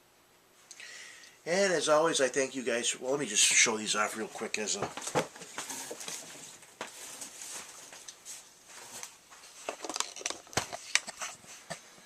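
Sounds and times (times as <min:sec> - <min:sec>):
packaging rustling: 0:05.0 - 0:11.4.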